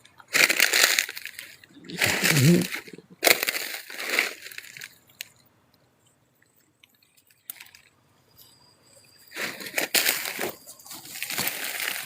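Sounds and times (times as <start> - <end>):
rustling and crunching leaves: 0.0 - 5.4, 9.3 - 12.0.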